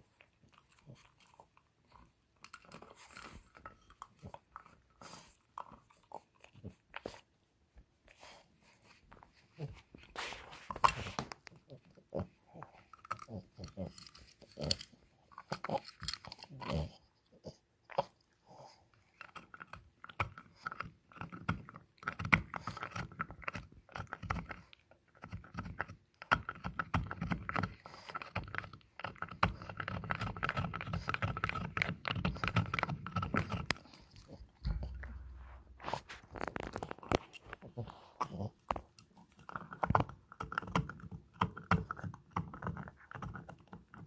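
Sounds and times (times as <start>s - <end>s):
dog chewing on antler: 0.0s - 7.2s, 8.7s - 44.0s.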